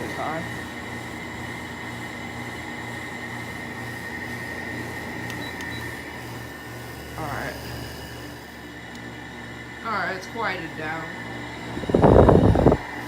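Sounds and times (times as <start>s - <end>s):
window air conditioner humming: 0.0s - 13.0s
high whine: 9.8s - 13.0s.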